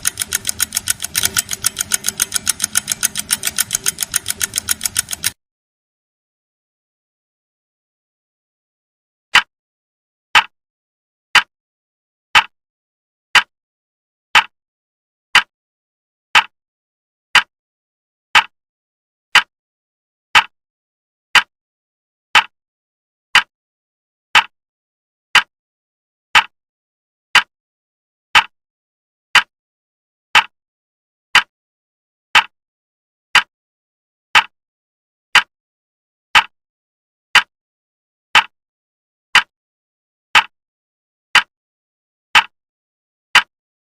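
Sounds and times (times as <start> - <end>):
clock ticking: 0.0 - 5.4, 34.4 - 34.6, 36.4 - 36.6, 38.4 - 38.6, 40.4 - 40.6, 42.4 - 42.6.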